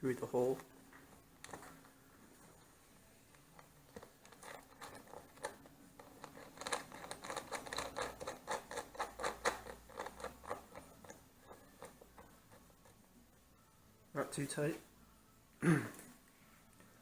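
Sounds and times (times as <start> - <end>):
nut tightening clicks and scrapes: 3.3 - 13.0.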